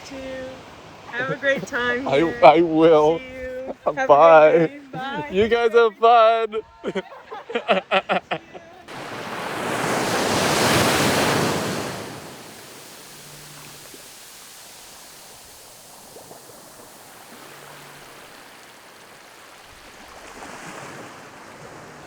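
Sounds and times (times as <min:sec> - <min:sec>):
waterfall rushing: 0:08.9 - 0:20.5.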